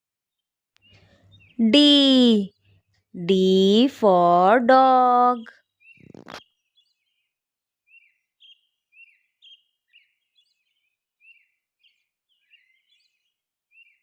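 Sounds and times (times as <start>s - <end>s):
faint birds chirping: 0.8s - 7.3s.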